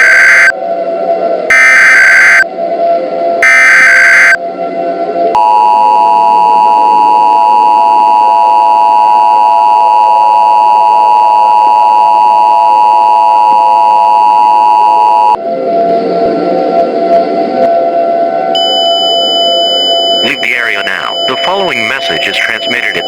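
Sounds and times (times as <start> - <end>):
two-pitch alert tone: 0.0 - 0.5, 1.5 - 2.4, 3.4 - 4.4, 18.6 - 23.0.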